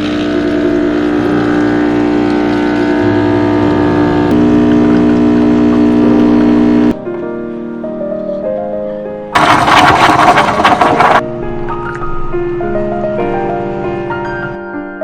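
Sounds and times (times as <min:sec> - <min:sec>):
moving bass line: 0:00.1 - 0:07.0.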